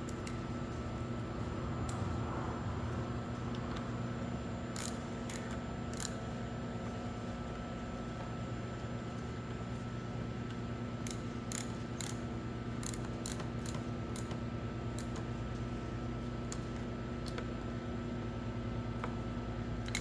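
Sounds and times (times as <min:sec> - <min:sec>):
low hum: 0:00.6 - 0:04.7.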